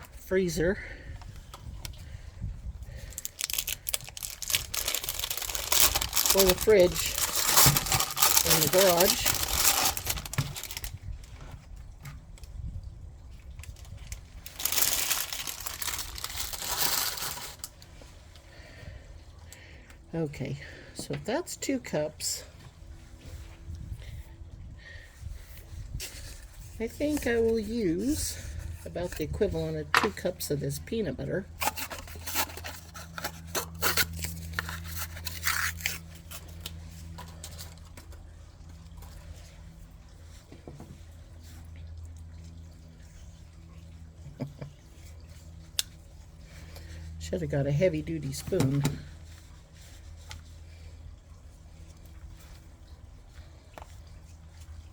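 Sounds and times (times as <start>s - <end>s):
bag crinkling: 3.0s - 11.0s, 13.8s - 17.7s.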